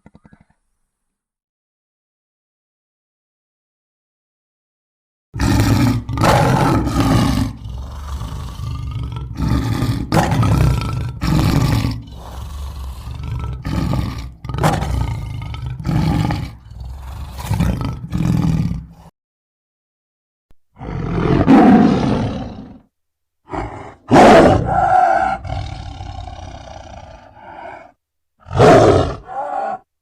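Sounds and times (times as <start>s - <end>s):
animal roaring: 5.4s - 19.1s, 20.8s - 22.8s, 23.5s - 29.9s.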